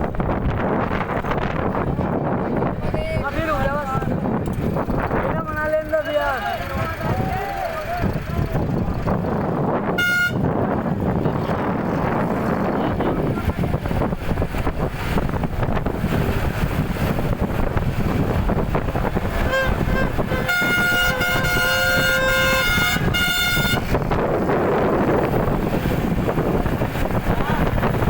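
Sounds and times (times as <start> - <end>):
moving vehicle rumble: 0.0 - 28.0
multi-tone vehicle horn: 9.9 - 10.7, 19.2 - 24.2.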